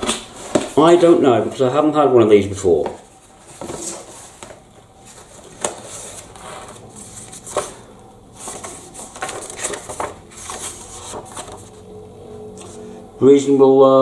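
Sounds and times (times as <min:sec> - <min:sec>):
cardboard rustling and scraping: 0:00.0 - 0:01.6, 0:02.8 - 0:11.8.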